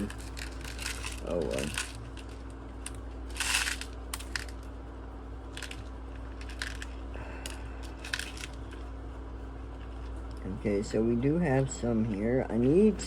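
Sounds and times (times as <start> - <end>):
small screws rattling in plastic case: 0.0 - 4.6, 5.5 - 8.8
steady low hum: 0.0 - 13.0.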